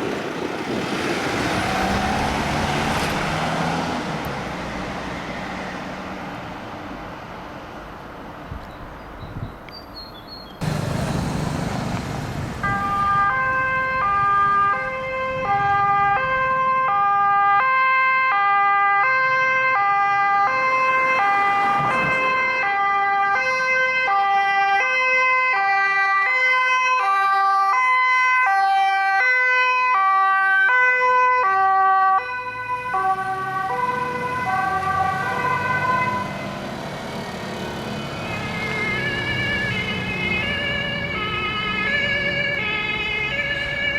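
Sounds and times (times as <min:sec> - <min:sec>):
passing vehicle noise: 0:00.0 - 0:08.6, 0:10.6 - 0:18.3, 0:19.1 - 0:23.6, 0:27.8 - 0:43.9
two-tone siren: 0:12.6 - 0:36.7, 0:37.6 - 0:43.9.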